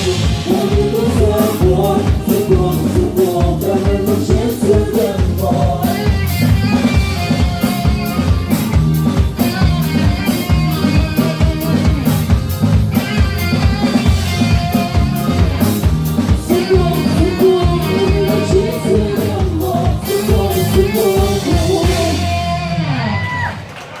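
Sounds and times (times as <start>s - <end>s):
person singing: 0.0s - 8.4s, 16.2s - 23.2s
keyboard melody and chords: 0.0s - 23.0s
drum kit beat: 0.0s - 23.6s
bass: 0.0s - 24.0s.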